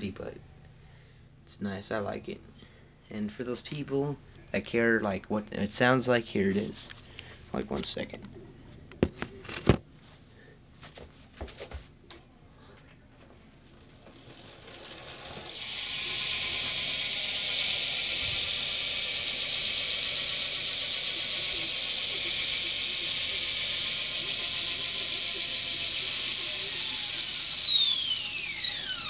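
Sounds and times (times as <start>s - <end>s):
bicycle hub ratcheting buzz: 13.6s - 29.0s.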